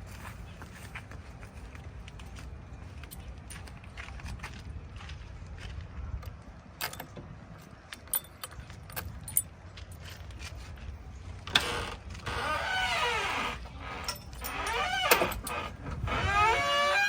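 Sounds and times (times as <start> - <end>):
diesel engine rumble: 0.0 - 17.0
metallic clanks and rattles: 13.6 - 17.0.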